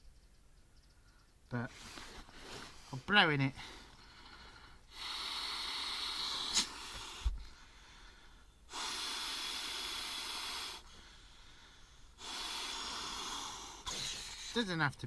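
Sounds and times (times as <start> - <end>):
person blowing into a mat: 4.9 - 7.4.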